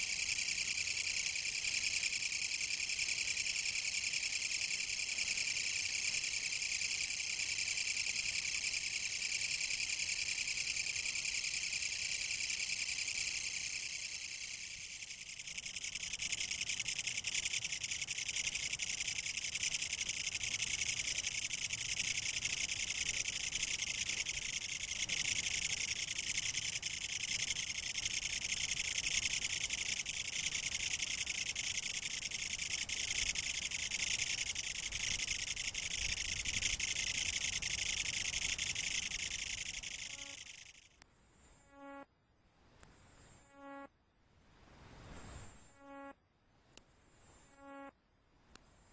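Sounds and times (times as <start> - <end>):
katydid rasping buzz: 0.0 - 42.1, 43.1 - 43.9, 45.2 - 46.2, 47.2 - 47.9.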